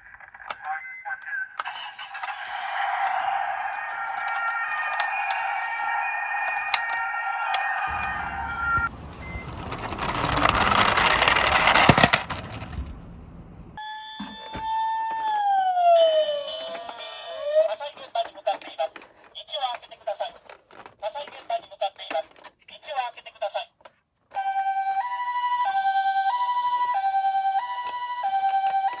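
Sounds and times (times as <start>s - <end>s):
toy car wheels rolling on plastic: 0.0s - 13.8s, 15.1s - 24.7s, 25.8s - 29.0s
electronic toy siren tone: 2.1s - 13.0s, 13.8s - 17.8s, 24.4s - 29.0s.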